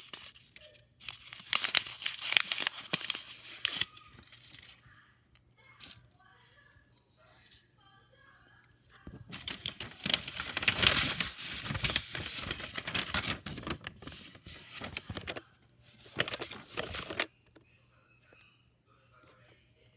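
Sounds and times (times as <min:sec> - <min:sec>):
packaging rustling and crinkling: 0:00.0 - 0:04.8, 0:09.1 - 0:15.4, 0:16.0 - 0:17.3.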